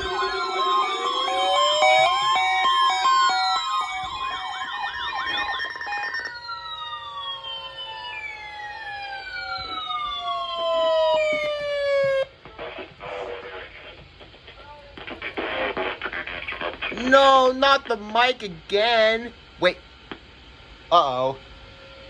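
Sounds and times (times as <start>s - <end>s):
sirens wailing and yelping: 0.0s - 12.3s.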